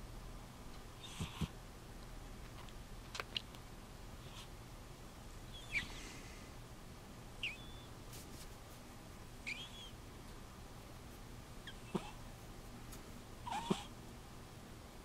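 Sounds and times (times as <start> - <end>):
cat snoring with squeaky whistle: 1.0 - 1.5, 5.5 - 6.0, 7.4 - 7.9, 9.5 - 9.9, 11.6 - 12.2, 13.4 - 13.9.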